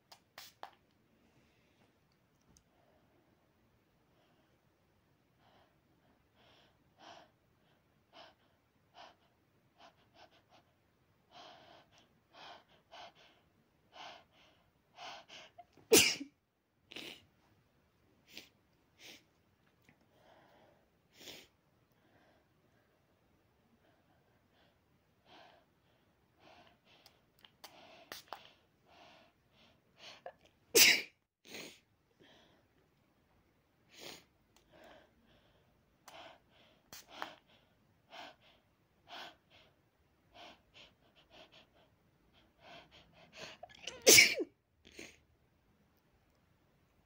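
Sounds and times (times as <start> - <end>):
quiet breathy sounds: 0.0 - 15.9, 16.8 - 30.7, 31.4 - 47.0
person sneezing loudly: 15.9 - 16.3, 30.8 - 31.1, 43.6 - 44.5.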